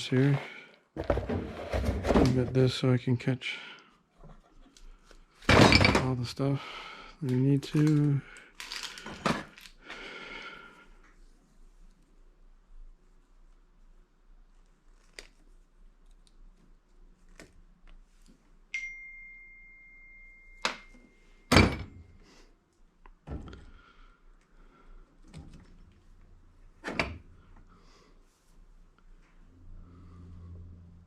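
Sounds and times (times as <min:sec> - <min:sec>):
clear ringing tone: 0:18.8 - 0:21.4.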